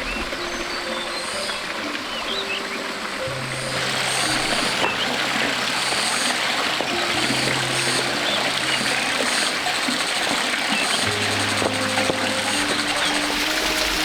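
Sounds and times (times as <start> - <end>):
soft music of low notes: 0.0 - 14.0
stream water running: 0.0 - 14.0.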